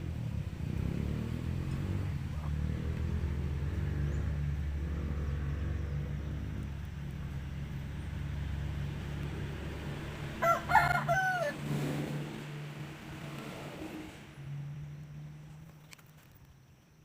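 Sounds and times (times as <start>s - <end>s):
rooster crowing: 10.3s - 11.7s.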